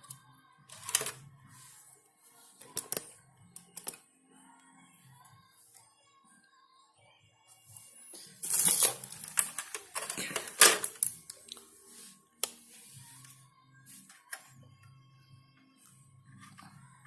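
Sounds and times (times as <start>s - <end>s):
faint music: 0.0s - 17.0s
objects rattling and clicking: 8.5s - 11.2s.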